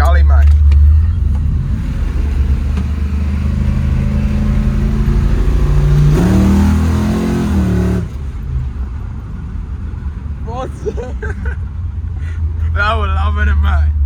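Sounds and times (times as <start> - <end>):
car engine accelerating hard: 0.0 - 14.0.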